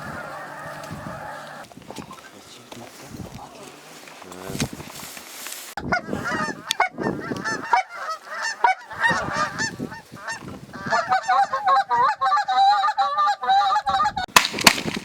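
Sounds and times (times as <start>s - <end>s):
geese honking and clucking: 0.0s - 2.1s, 5.8s - 14.3s.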